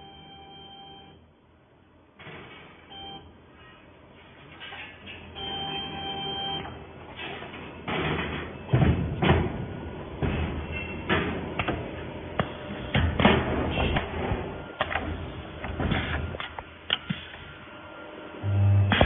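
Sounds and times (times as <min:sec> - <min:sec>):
machine clunks and knocks: 0:07.8 - 0:16.5.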